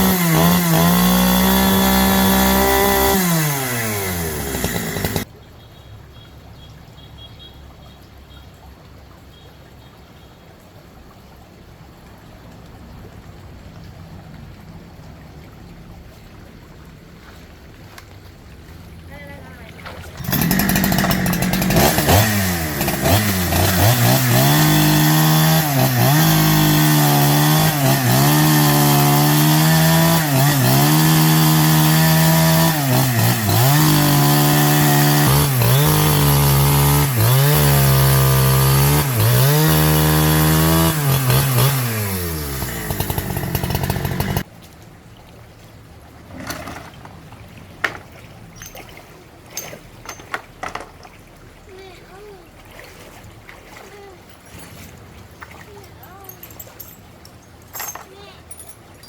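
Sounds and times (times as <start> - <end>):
chainsaw engine revving: 0.0 - 5.3, 20.1 - 44.5.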